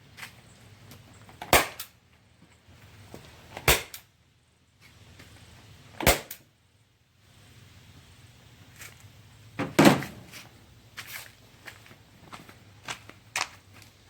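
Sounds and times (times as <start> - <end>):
heavy thunk: 9.6 - 10.3.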